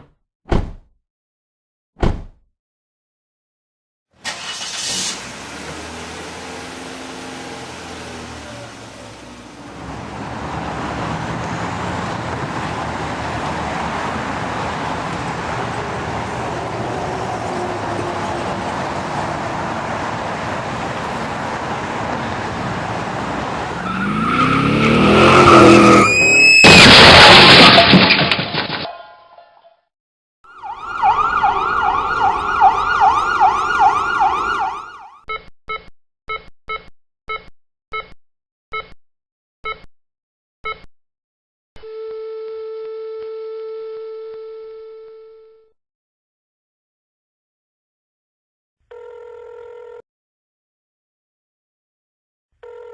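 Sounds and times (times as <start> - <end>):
car engine starting and idling: 4.2 - 9.6
car driving with road noise: 4.2 - 27.0
engine revving: 4.3 - 26.2
loud crash impact: 26.6 - 28.9.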